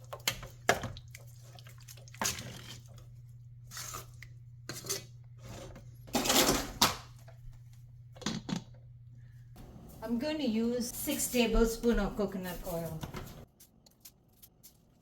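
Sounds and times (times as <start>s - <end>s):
steady low hum: 0.4s - 12.3s
dishes and utensils clattering: 6.1s - 7.0s.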